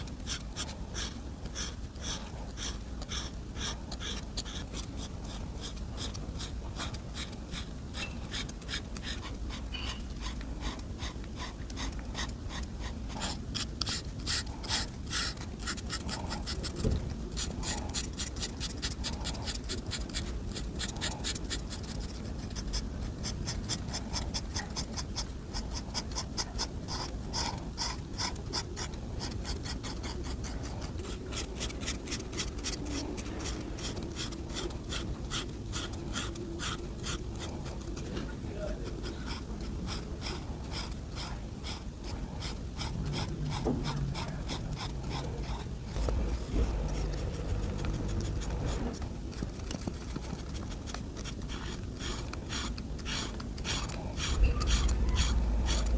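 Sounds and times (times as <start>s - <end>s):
coloring tool scratching paper: 0.0s - 38.1s, 38.7s - 55.9s.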